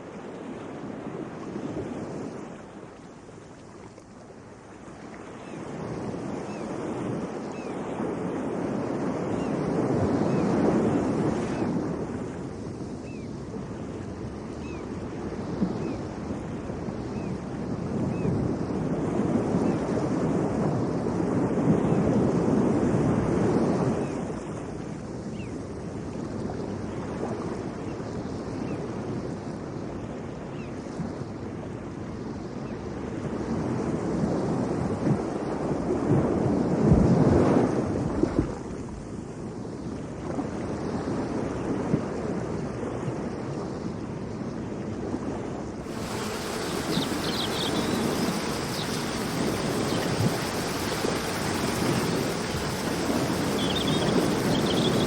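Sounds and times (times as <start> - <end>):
wind: 0.0 - 55.0
water noise: 45.8 - 55.0
wind buffeting microphone: 45.8 - 55.0.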